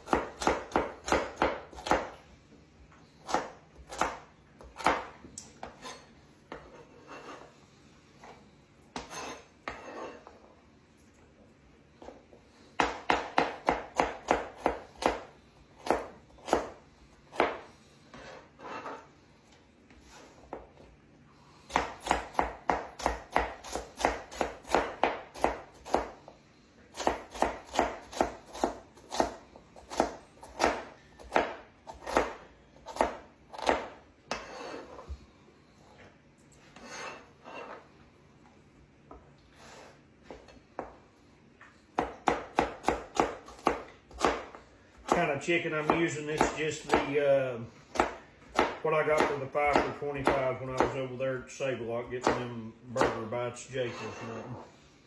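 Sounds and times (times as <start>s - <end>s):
knife chopping on cutting board: 0.0s - 2.2s, 3.2s - 7.4s, 12.8s - 19.0s, 21.7s - 26.2s, 26.9s - 35.2s, 42.0s - 47.2s, 47.9s - 51.0s, 52.2s - 53.3s.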